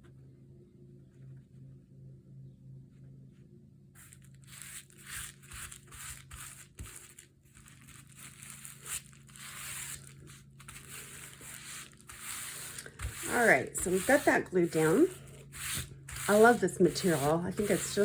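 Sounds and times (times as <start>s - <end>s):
envelope crinkling and rustling: 4.0s - 13.0s.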